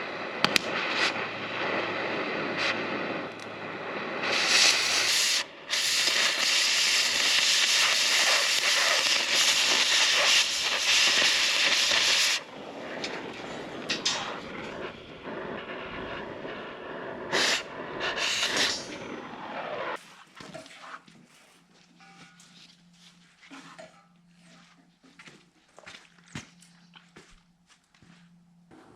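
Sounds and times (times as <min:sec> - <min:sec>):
aerosol spray can hissing: 0:04.2 - 0:12.4, 0:16.9 - 0:18.8.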